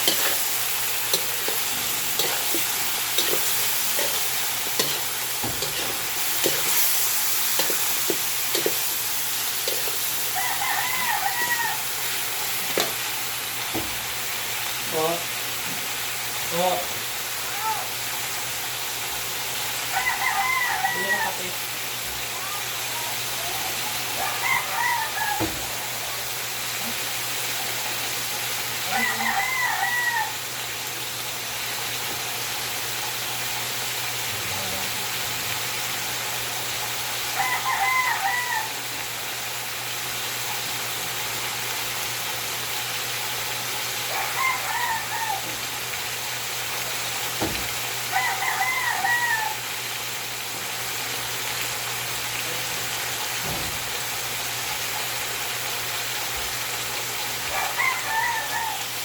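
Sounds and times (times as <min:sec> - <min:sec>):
rooster crowing: 0:00.0 - 0:13.0, 0:19.9 - 0:21.6, 0:24.0 - 0:26.6, 0:28.8 - 0:30.6, 0:37.2 - 0:39.1, 0:44.0 - 0:45.8, 0:48.0 - 0:49.9, 0:57.5 - 0:59.0.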